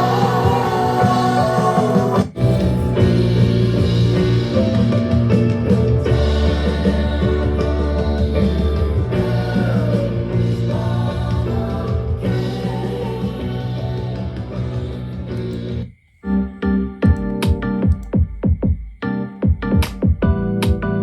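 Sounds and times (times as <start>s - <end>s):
song through portable speaker: 0.0s - 15.7s.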